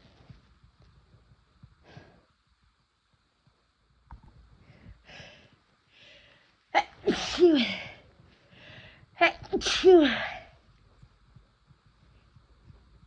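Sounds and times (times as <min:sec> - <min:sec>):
woman sneezing with vocal cry: 0:06.8 - 0:08.0, 0:09.3 - 0:10.4
breathy in-breaths: 0:08.4 - 0:09.1.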